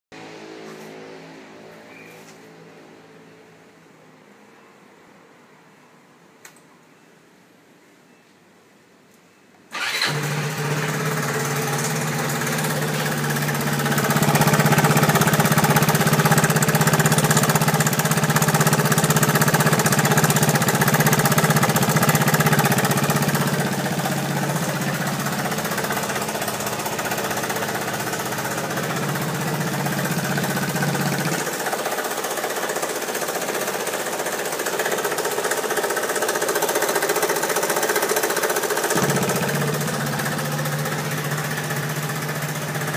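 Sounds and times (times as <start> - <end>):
scooter engine starting and running: 9.7 - 42.9.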